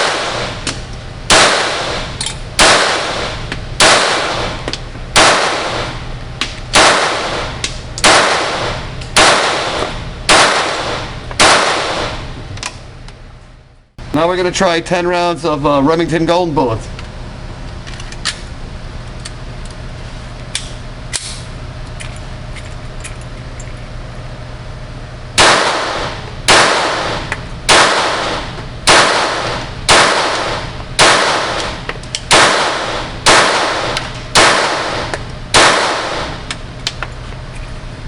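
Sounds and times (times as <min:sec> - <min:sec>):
pistol shots: 0:00.0 - 0:00.7, 0:01.3 - 0:04.6, 0:05.2 - 0:06.0, 0:06.7 - 0:12.3, 0:25.4 - 0:36.5
pistol handling clicks: 0:20.6 - 0:21.4.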